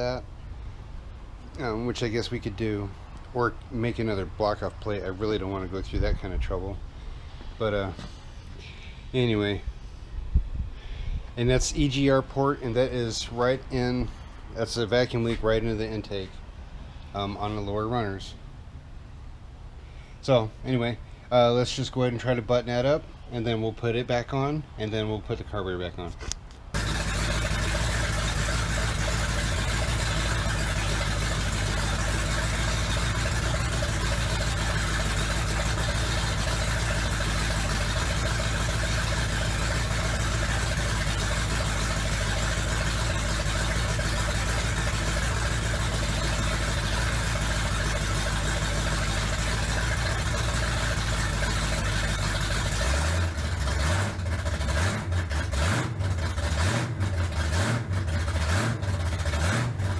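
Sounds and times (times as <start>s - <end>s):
engine idling: 26.7s - 59.9s.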